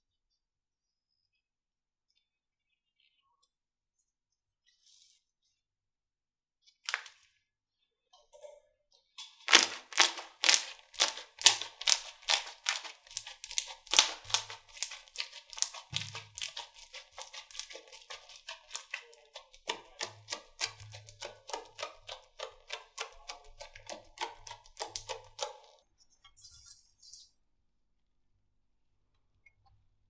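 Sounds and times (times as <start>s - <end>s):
slime squeezed with sticky pops: 9.5s - 17.7s.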